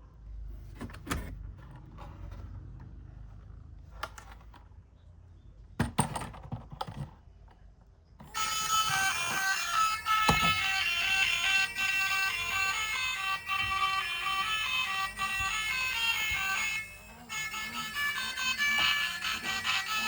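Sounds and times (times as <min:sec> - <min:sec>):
plastic toys clicking and clattering: 0:05.8 - 0:07.2
background music: 0:08.4 - 0:20.0.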